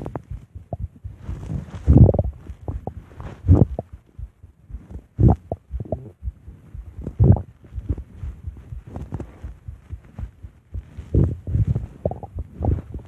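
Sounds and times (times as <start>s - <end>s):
stomach growling: 0.0s - 4.0s, 4.9s - 6.2s, 7.0s - 8.1s, 10.9s - 13.0s.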